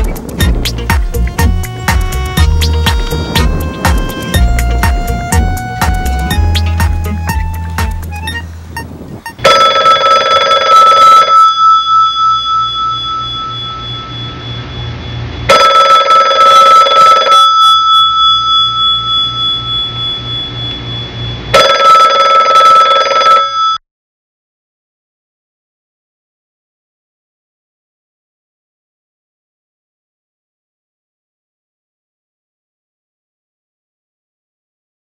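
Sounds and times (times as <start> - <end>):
telephone bell ringing: 9.3 - 14.8, 15.5 - 23.8.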